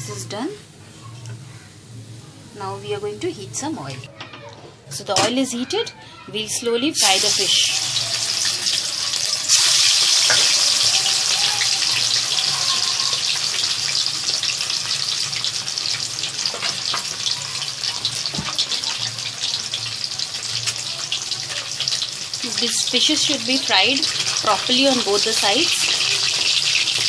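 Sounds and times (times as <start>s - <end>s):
fish sizzling in hot oil: 7.0s - 27.0s.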